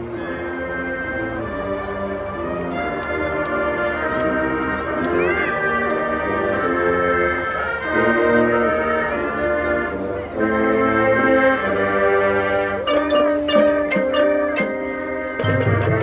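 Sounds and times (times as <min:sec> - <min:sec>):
marching band brass chords: 0:00.0 - 0:16.0
sharp percussion strikes: 0:13.0 - 0:16.0.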